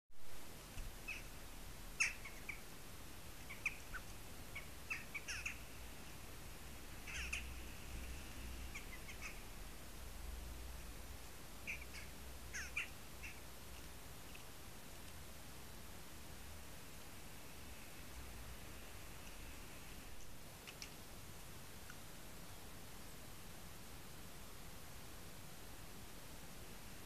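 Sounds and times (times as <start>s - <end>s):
faint steady hiss: 0.1s - 27.0s
birds chirping: 0.8s - 2.7s, 3.3s - 9.7s, 11.6s - 13.5s.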